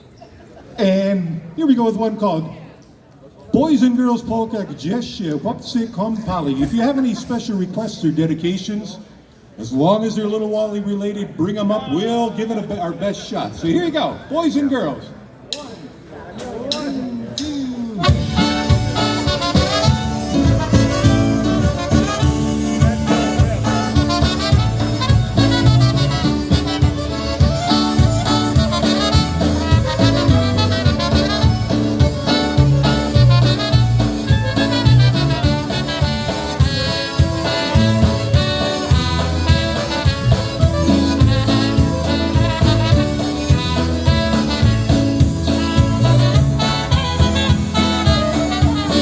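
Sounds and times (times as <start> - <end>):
polka band playing: 5.6 - 8.1, 16.7 - 49.0
bass and drum rhythm: 16.7 - 49.0
horns: 18.0 - 49.0.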